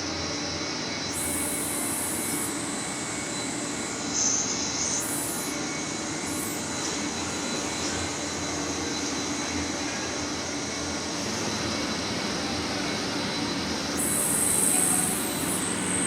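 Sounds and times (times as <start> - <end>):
industrial machinery running: 0.0 - 16.0
high hiss bursts: 1.1 - 5.6, 14.0 - 16.0.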